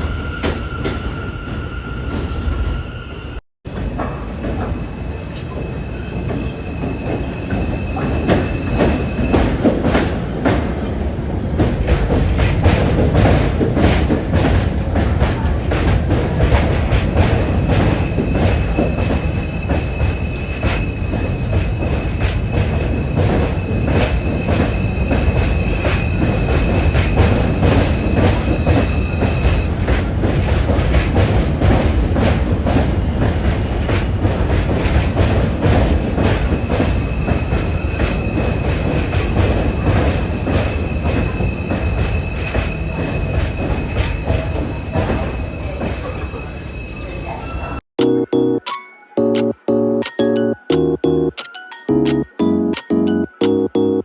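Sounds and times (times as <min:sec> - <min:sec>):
high wheel squeal: 0:00.0 - 0:09.6, 0:17.4 - 0:29.7, 0:36.6 - 0:47.8
subway train rumbling: 0:00.0 - 0:47.9.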